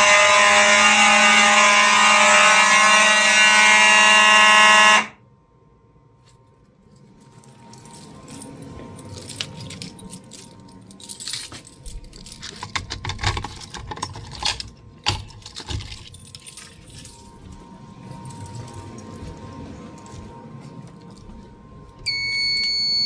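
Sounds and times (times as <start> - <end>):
keys jangling: 6.2 - 22.7
handling clicks and rattles: 6.9 - 22.1
faint steady tone: 16.8 - 23.0.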